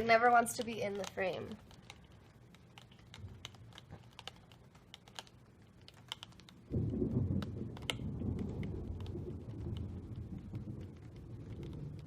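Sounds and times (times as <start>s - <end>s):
thunder rumbling: 6.7s - 12.0s.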